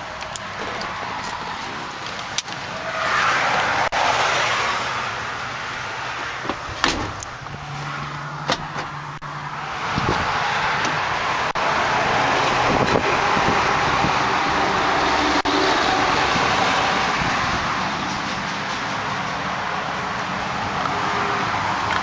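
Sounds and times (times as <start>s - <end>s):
road noise: 0.0s - 22.0s
wind gusting on microphone: 9.6s - 22.0s.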